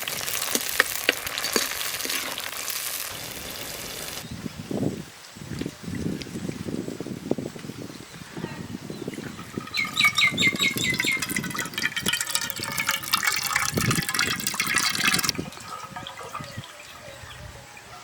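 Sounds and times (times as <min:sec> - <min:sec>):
water pouring and splashing: 0:00.0 - 0:04.2, 0:09.1 - 0:17.2
bird calling falling notes: 0:09.2 - 0:11.6.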